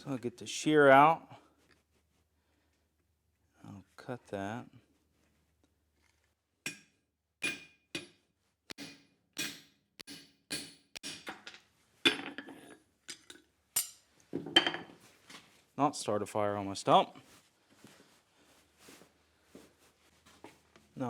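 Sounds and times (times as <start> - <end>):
hammer striking steel: 6.7 - 11.4.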